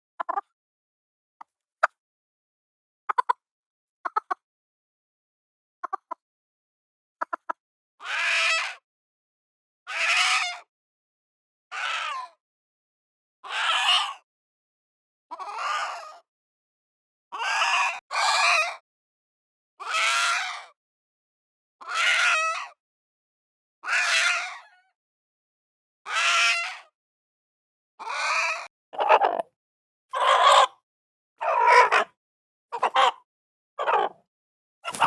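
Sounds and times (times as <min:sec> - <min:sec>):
chicken calls: 0:28.1 - 0:29.4, 0:30.1 - 0:30.8, 0:31.4 - 0:33.2, 0:33.8 - 0:34.2.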